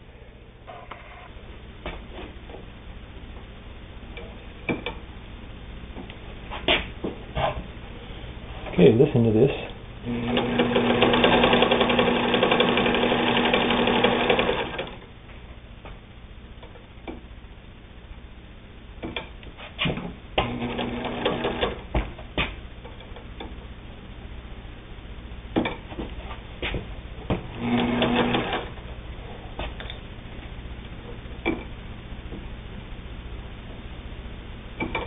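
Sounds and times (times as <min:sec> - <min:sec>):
sewing machine running: 0:10.0 - 0:15.1, 0:20.4 - 0:21.8, 0:27.5 - 0:28.8.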